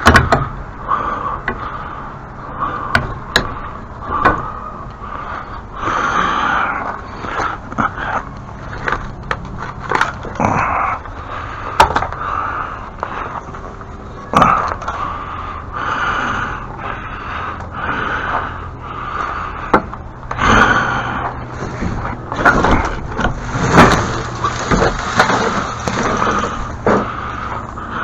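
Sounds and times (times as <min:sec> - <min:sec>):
low steady hum: 0:00.0 - 0:28.0
scraping strokes: 0:21.5 - 0:27.6.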